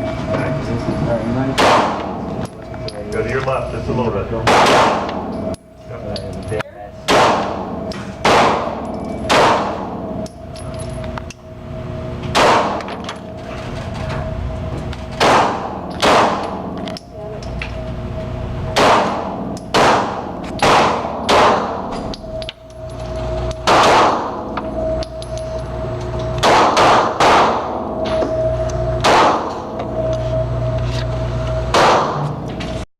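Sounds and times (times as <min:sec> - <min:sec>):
steady background hum: 0:00.0 - 0:32.8
pistol shots echoing: 0:01.6 - 0:02.2, 0:04.4 - 0:05.3, 0:07.1 - 0:10.0, 0:12.3 - 0:13.0, 0:15.2 - 0:16.6, 0:18.7 - 0:21.8, 0:23.6 - 0:24.4, 0:26.4 - 0:27.7, 0:29.0 - 0:29.6, 0:31.7 - 0:32.2.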